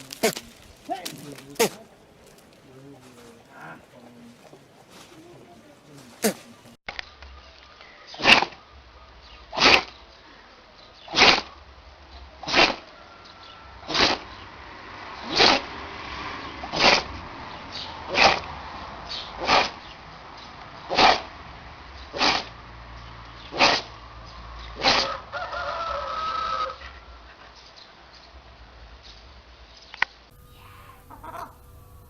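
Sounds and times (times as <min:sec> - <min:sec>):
animal sneezing: 0:01.3 - 0:01.9, 0:06.0 - 0:06.7, 0:08.2 - 0:08.6, 0:09.5 - 0:09.9, 0:11.1 - 0:11.5, 0:12.4 - 0:12.8, 0:13.9 - 0:14.2, 0:16.7 - 0:17.1, 0:18.1 - 0:18.4, 0:19.4 - 0:19.8, 0:20.9 - 0:21.3, 0:22.2 - 0:22.5, 0:23.5 - 0:23.9, 0:24.8 - 0:25.1.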